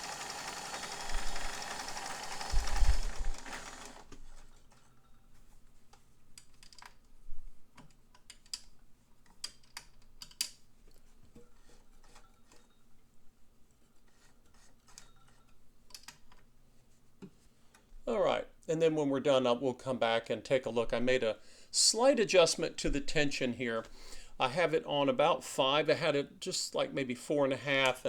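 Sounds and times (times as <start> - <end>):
sewing machine growling: 0.0 - 4.5.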